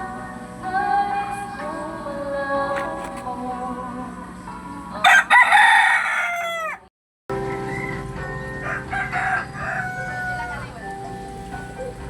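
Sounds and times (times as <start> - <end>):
rooster crowing: 5.0 - 10.8.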